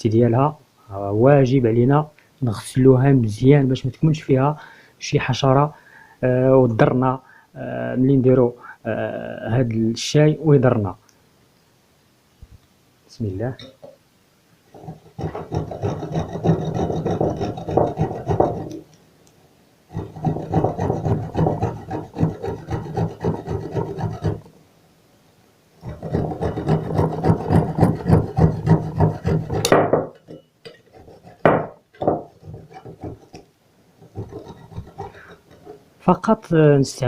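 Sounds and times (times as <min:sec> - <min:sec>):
cones scraped on a grater: 0:14.8 - 0:18.8, 0:20.0 - 0:24.4, 0:25.8 - 0:29.6, 0:34.0 - 0:35.8.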